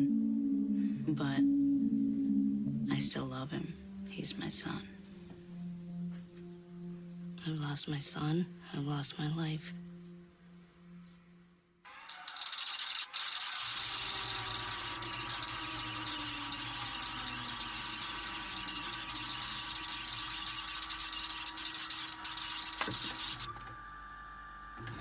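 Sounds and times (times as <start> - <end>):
harsh static noise: 12.3 - 23.5.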